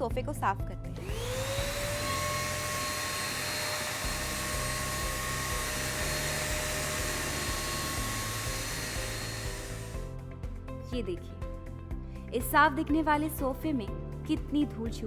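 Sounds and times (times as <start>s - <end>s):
vacuum cleaner running: 1.0s - 10.1s.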